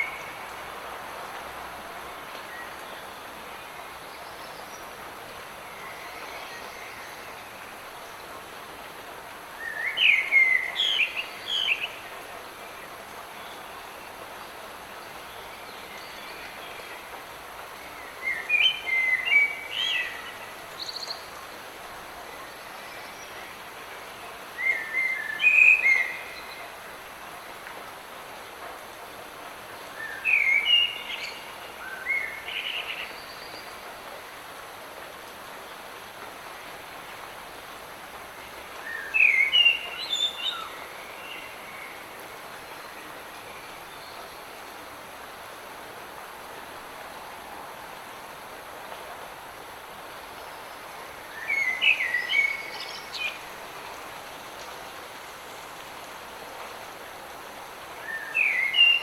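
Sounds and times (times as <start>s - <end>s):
light rain falling: 0.0s - 59.0s
songbird chirping: 38.3s - 45.3s, 49.6s - 59.0s.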